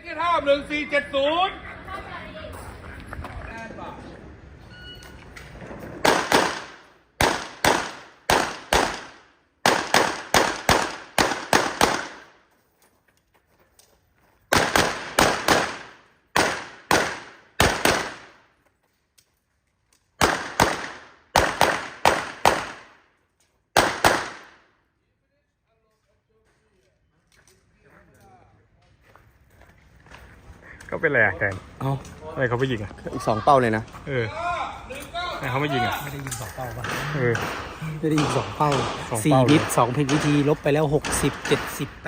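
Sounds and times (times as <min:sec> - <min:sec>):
handgun shots: 0:06.0 - 0:12.3, 0:14.5 - 0:18.3, 0:23.8 - 0:24.6.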